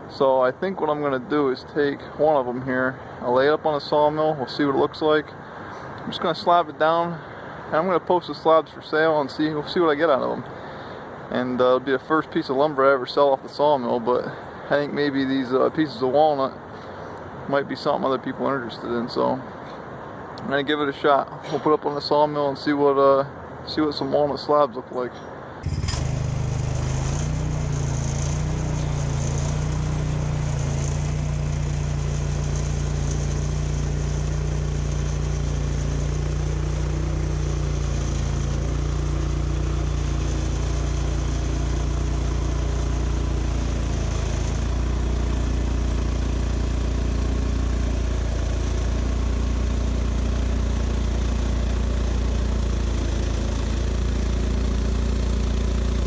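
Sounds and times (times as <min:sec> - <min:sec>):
engine running: 0:25.0 - 0:56.0.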